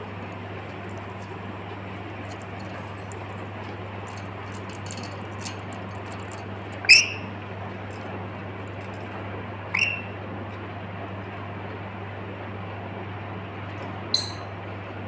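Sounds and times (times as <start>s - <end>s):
air conditioner humming: 0.0s - 15.0s
parrot squawking: 6.8s - 7.3s, 9.7s - 10.2s.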